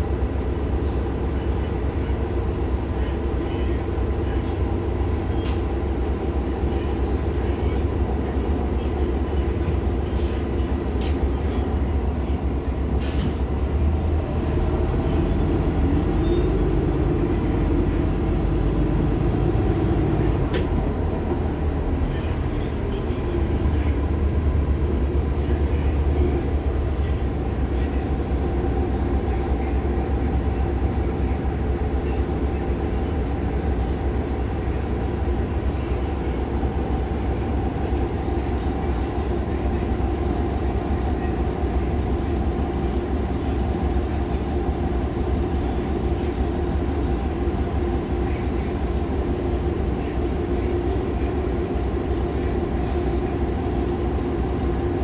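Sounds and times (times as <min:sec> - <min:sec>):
bus engine drone: 0:00.0 - 0:55.0
road rumble: 0:00.0 - 0:55.0
faint high squeal: 0:10.8 - 0:14.3.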